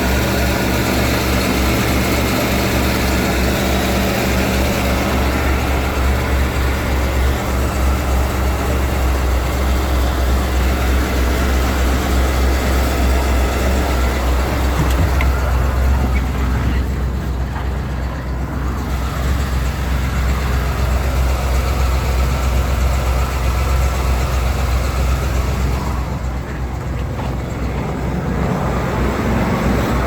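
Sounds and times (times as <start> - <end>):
van engine idling: 0.0 - 30.0.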